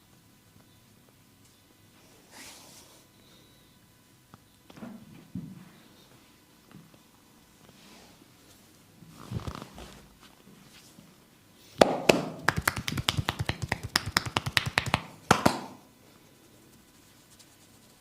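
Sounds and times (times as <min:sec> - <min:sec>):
rapid sharp massage clicks: 0:12.5 - 0:15.8
soft rubbing: 0:16.1 - 0:18.0.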